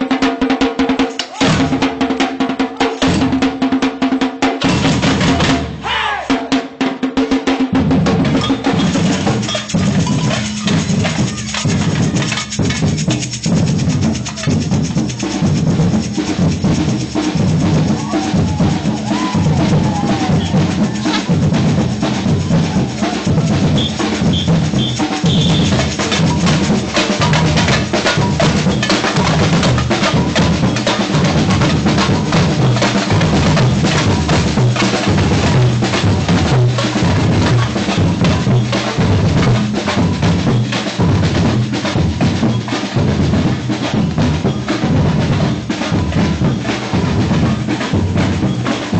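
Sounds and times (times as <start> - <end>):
snare drums: 0.0 - 48.9
deep bass drums: 7.8 - 48.9.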